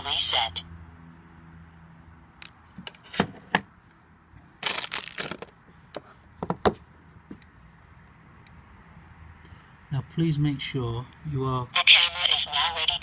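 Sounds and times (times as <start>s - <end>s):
crackling rustling: 4.6s - 5.6s
sharp handling clicks and knocks: 4.6s - 7.5s.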